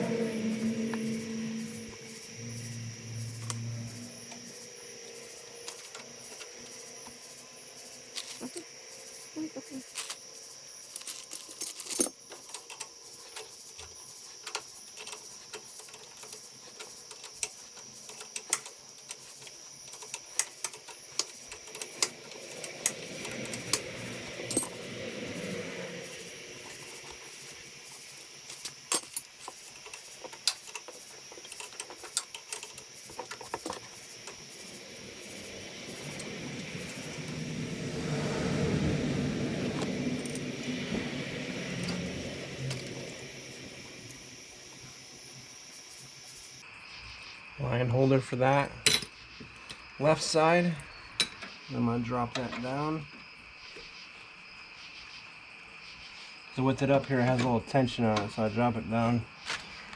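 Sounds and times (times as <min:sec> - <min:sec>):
low rumble: 0:00.0 - 0:05.0, 0:34.7 - 0:44.0
metal tools clinking: 0:08.1 - 0:08.7, 0:09.9 - 0:10.2, 0:10.9 - 0:24.9, 0:26.6 - 0:34.8.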